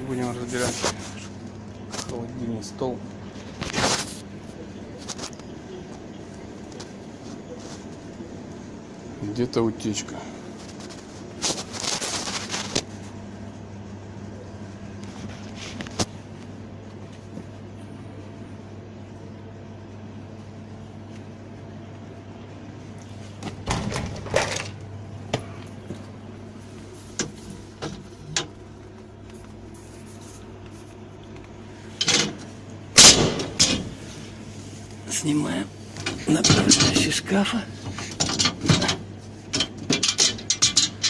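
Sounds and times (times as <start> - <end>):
steady low hum: 0.0 - 41.0
parts knocking and clattering: 23.4 - 25.5, 27.1 - 28.6, 32.0 - 34.1, 36.0 - 41.0.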